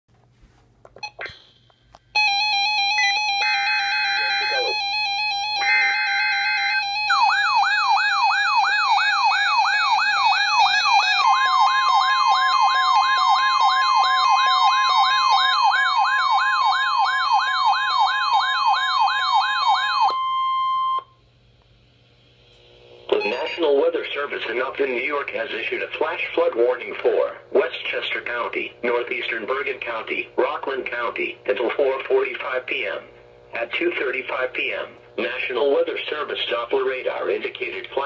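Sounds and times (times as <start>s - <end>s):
steady alarm tones: 1.0s - 21.2s, 23.1s - 24.7s
rising siren sweep: 2.2s - 20.2s
single-pitch alert tone: 23.1s - 23.7s.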